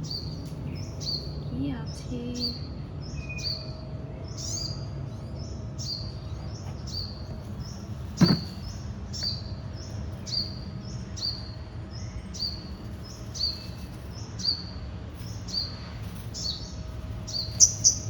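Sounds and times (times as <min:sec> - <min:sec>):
low background rumble: 0:00.0 - 0:18.0
small bird chirping: 0:00.0 - 0:18.0
loud knock: 0:08.2 - 0:08.7.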